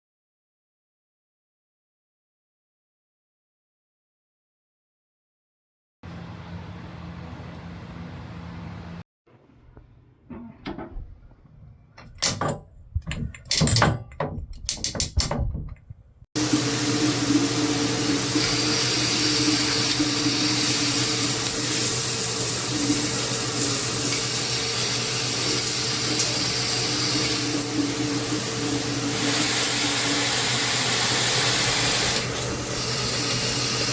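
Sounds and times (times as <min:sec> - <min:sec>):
sharp knocks and clicks: 0:12.0 - 0:16.2
shower head spraying water: 0:16.4 - 0:33.9.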